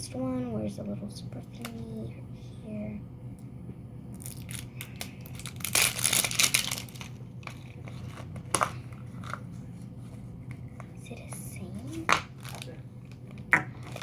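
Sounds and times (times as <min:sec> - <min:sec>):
plastic packaging crinkling and tearing: 0:04.2 - 0:08.8, 0:12.2 - 0:14.0.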